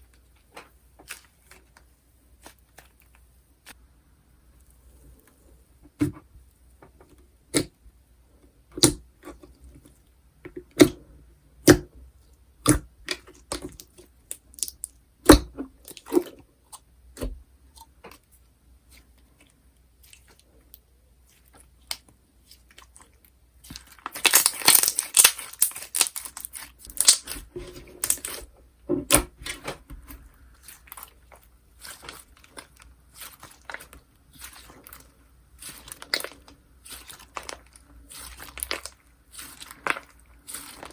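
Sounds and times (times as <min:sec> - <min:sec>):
slime crackling: 0:21.2 - 0:28.5, 0:29.1 - 0:40.9.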